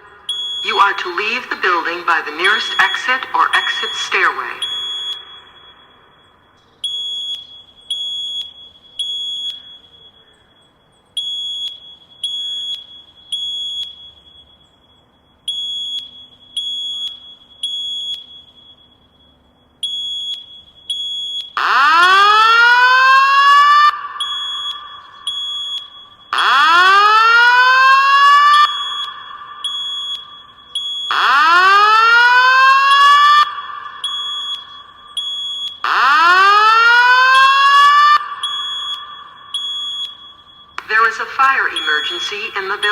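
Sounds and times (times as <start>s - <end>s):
high-pitched alarm beeps: 0.0s - 42.9s
loud rising whoop alarm: 21.6s - 42.9s.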